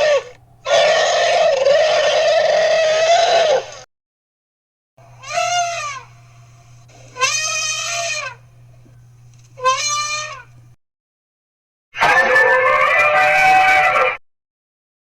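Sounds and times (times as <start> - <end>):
drawn-out animal calls: 0.0 - 3.8, 5.2 - 6.2, 7.0 - 8.4, 9.6 - 10.5, 12.0 - 14.2
steady low hum: 0.0 - 3.8, 5.0 - 10.8.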